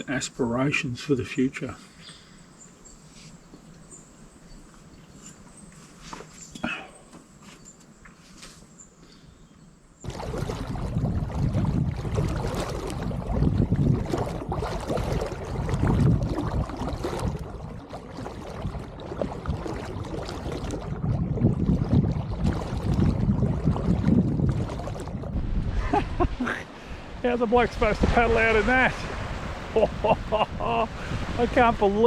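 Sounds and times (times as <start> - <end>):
wind buffeting microphone: 10.0 - 32.0
rushing tidal water and surf: 21.8 - 32.0.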